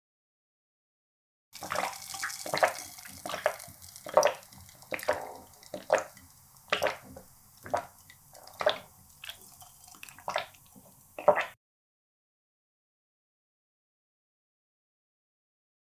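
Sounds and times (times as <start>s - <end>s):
wet chewing mouth sounds: 1.6s - 11.5s.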